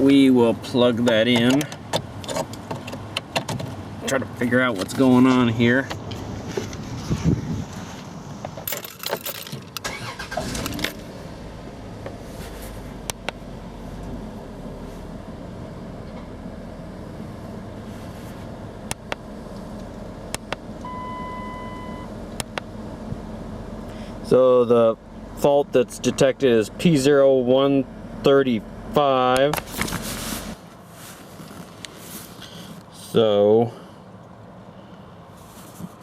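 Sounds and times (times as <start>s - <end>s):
handling clicks and rustling: 1.0s - 6.8s, 7.7s - 11.0s, 29.4s - 30.3s
electronic beep: 20.8s - 22.1s.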